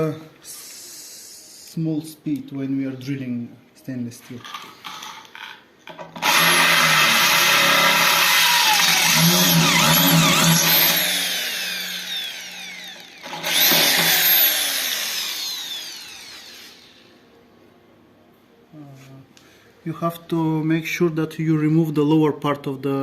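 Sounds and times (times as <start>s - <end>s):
electric drill drilling metal: 6.2s - 17.1s.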